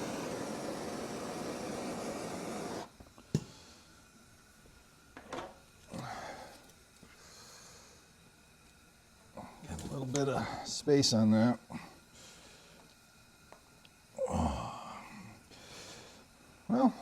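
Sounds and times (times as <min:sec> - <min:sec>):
heat gun blowing: 0:00.0 - 0:03.6.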